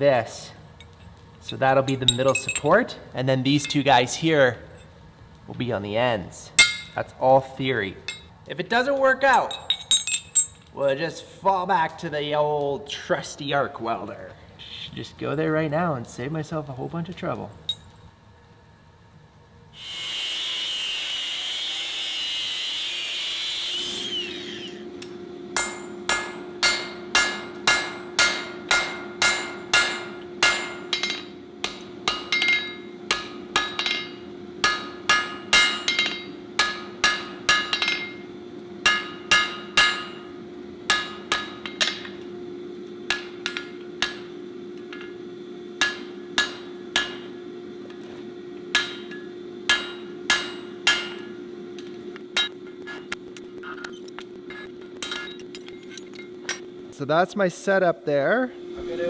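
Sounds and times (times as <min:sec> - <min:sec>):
hammer ringing on anvil: 0:01.9 - 0:02.8, 0:06.6 - 0:07.0, 0:24.2 - 0:38.2, 0:38.8 - 0:40.3, 0:40.9 - 0:42.2, 0:43.1 - 0:44.3, 0:45.8 - 0:47.3, 0:48.7 - 0:51.4
loud hiss: 0:19.8 - 0:24.7.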